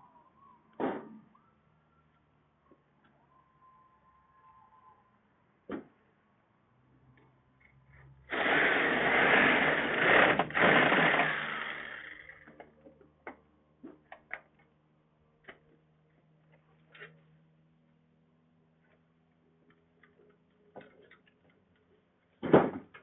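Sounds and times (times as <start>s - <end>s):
handheld power tool running: 8.3s - 12.6s.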